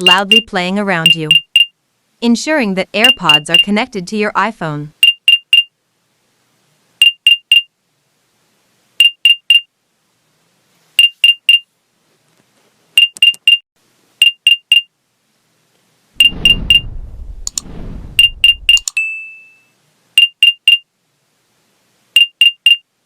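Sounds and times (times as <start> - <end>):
short high electronic beeps: 16.2 - 17.0, 18.1 - 19.6.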